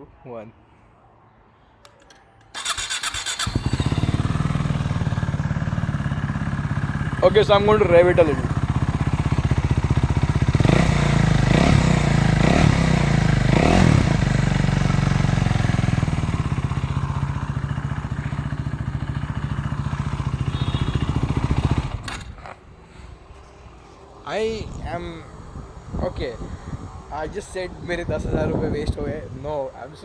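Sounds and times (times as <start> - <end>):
motorcycle engine revving and idling: 2.6 - 22.6.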